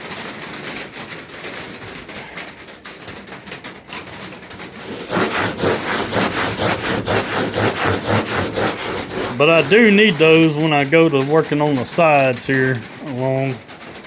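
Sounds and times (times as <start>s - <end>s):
sandpaper scraping on metal: 4.8s - 10.6s.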